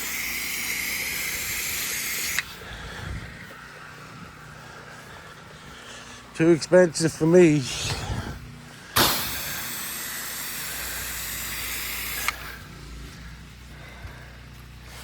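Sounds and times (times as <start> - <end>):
pressure washer spray hiss: 0.0 - 2.6, 9.0 - 12.6
low engine hum: 0.0 - 15.0
spray gun click: 0.6 - 2.5, 9.0 - 12.6.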